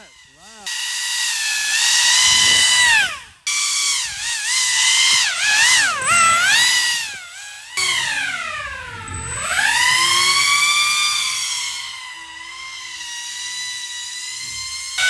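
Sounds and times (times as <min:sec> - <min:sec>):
airboat motor high whine: 0:05.0 - 0:13.6.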